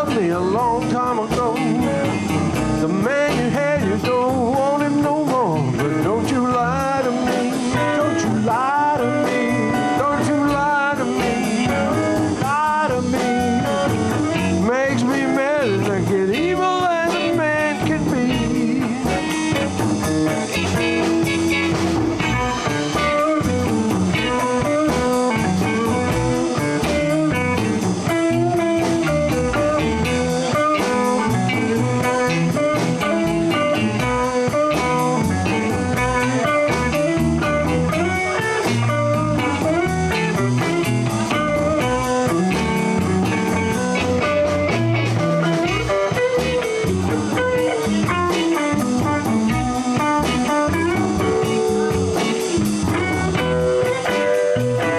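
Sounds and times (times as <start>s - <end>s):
blues band playing: 0.0s - 54.9s
electric guitar lead: 0.0s - 54.9s.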